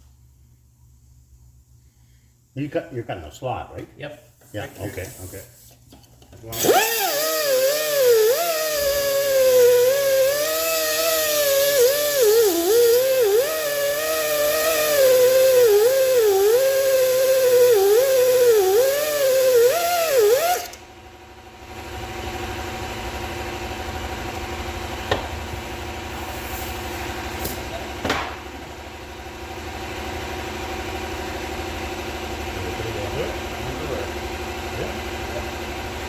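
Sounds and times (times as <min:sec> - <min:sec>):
die grinder whining on steel: 0:06.5 - 0:20.9.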